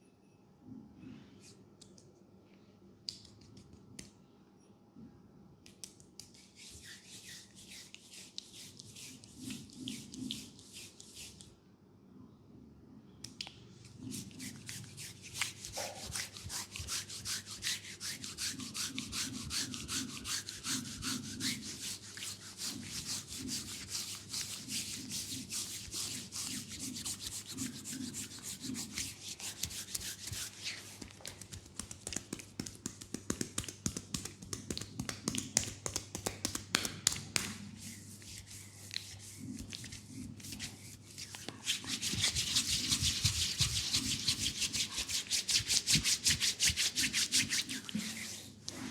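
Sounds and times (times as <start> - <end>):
hands rubbing on skin: 5.7 - 11.5, 14.0 - 48.9.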